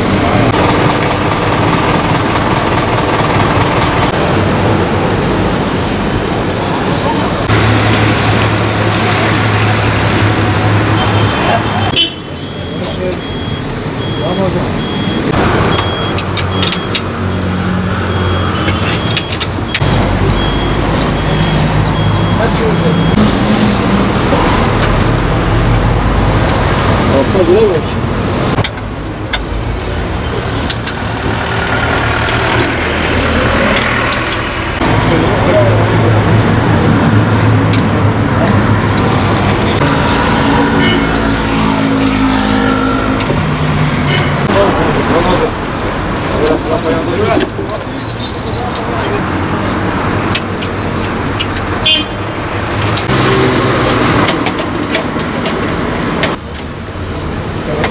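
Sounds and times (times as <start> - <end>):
street traffic: 0.0 - 57.9
bus engine idling: 6.6 - 25.5
high electronic beep: 12.0 - 23.3
sharp metallic clicks: 15.3 - 17.2.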